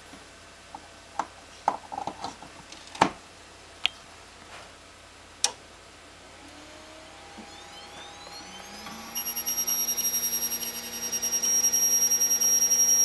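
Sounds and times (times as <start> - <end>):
faint rising whine: 6.2 - 13.0.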